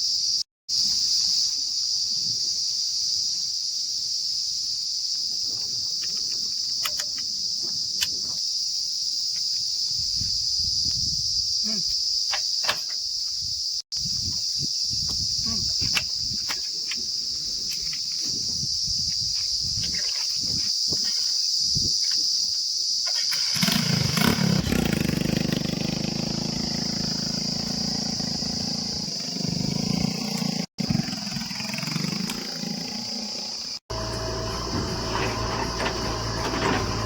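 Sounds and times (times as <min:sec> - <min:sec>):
high-pitched insect buzz: 0:00.0 - 0:33.8
diesel engine running close: 0:23.5 - 0:30.1, 0:33.9 - 0:37.0
heavy machinery rumble with knocks: 0:33.9 - 0:37.0.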